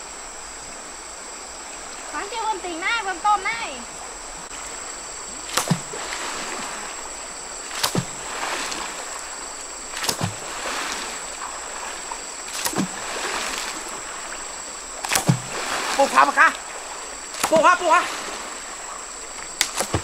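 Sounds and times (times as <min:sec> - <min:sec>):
water splashing: 0:01.5 - 0:20.0
water slapped hard: 0:05.5 - 0:07.0, 0:07.7 - 0:09.1, 0:09.9 - 0:14.2, 0:15.0 - 0:16.6, 0:17.3 - 0:18.6, 0:19.6 - 0:20.0.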